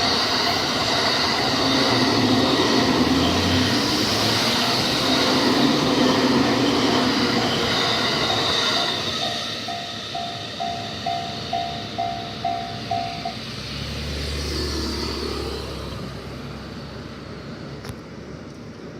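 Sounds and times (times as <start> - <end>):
level-crossing warning bell ringing: 0.0 - 13.6.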